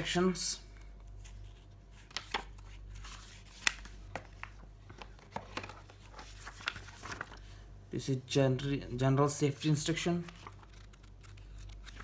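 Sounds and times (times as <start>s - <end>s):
paper and cardboard rustling: 1.1s - 7.6s, 10.1s - 12.0s.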